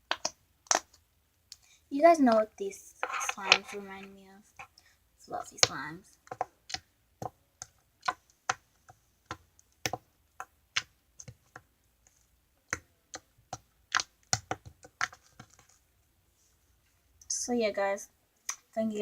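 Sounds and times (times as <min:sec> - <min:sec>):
slime clicking and popping: 0:00.0 - 0:01.6, 0:12.6 - 0:15.6.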